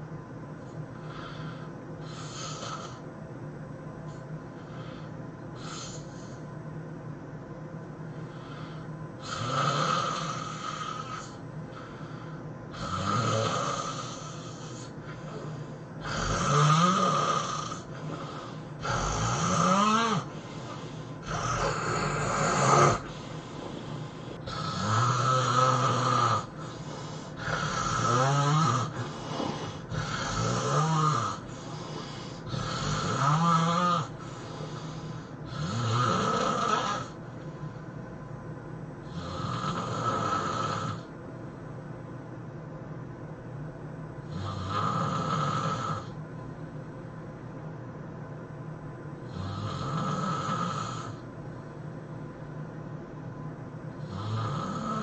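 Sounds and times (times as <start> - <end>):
person snoring heavily: 1.0 - 3.0, 4.7 - 6.3, 8.3 - 37.2, 39.0 - 41.1, 44.2 - 46.2, 49.2 - 51.2, 54.0 - 55.0.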